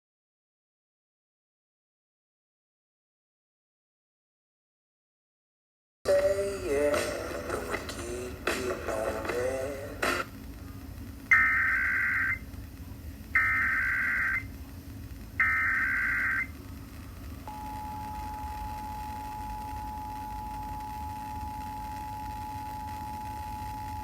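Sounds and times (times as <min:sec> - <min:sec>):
two-tone attention signal: 0:11.3 - 0:12.4, 0:13.4 - 0:14.5, 0:15.4 - 0:16.5, 0:17.5 - 0:24.0
digital data bursts: 0:11.3 - 0:12.5, 0:13.3 - 0:14.6, 0:15.4 - 0:16.6.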